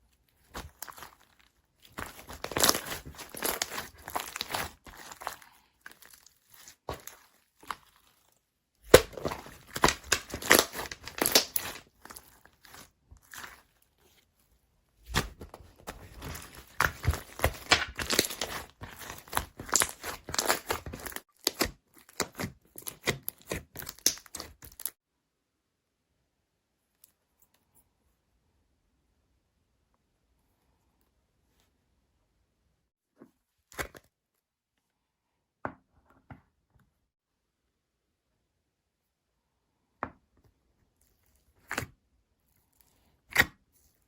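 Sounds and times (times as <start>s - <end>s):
slime crackling and popping: 0.4s - 13.7s, 15.1s - 24.9s.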